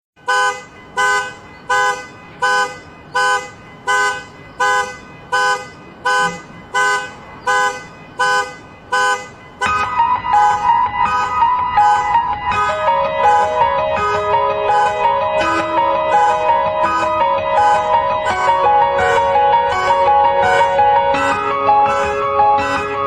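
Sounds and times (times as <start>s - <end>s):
car alarm horn honking: 0.2s - 23.0s
piano music: 9.5s - 23.0s.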